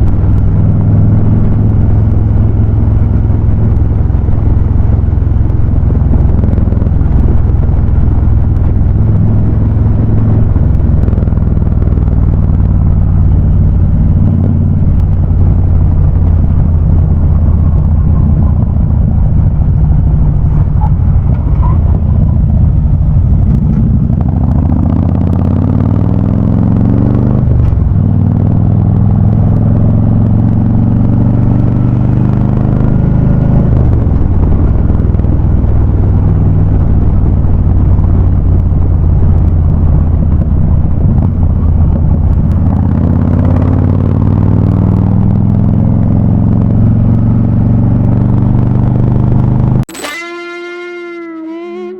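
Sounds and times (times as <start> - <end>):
motorcycle engine revving: 0.0 - 51.9.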